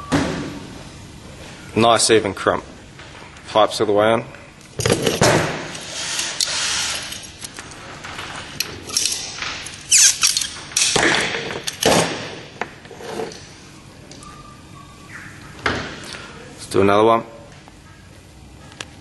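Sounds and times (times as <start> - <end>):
pipe handling scrapes and knocks: 11.0 - 13.5.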